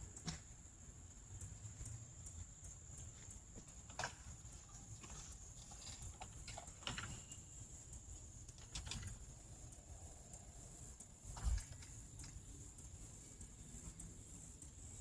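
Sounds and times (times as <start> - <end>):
chickens tapping and scratching: 1.4 - 9.4.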